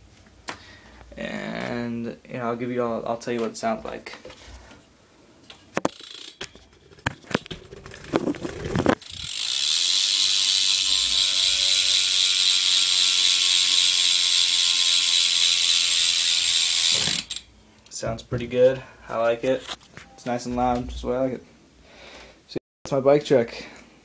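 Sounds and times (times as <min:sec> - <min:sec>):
bicycle hub ratchet buzz: 0:05.9 - 0:07.0, 0:08.5 - 0:17.5.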